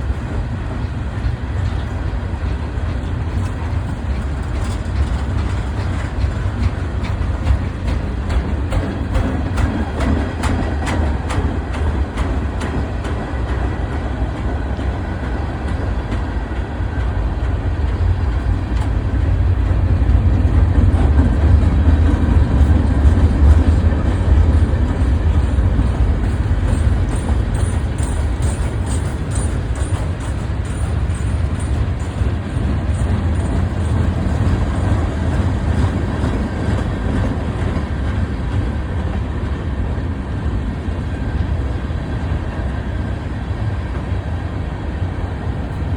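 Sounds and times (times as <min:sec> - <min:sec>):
freight train rumbling past: 0:00.0 - 0:45.9
wheels clattering on rails: 0:00.0 - 0:45.9.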